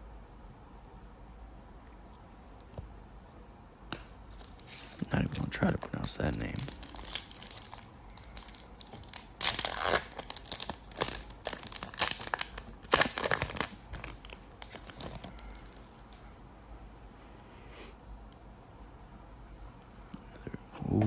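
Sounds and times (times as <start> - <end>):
foil wrapper tearing and crinkling: 4.2 - 16.2.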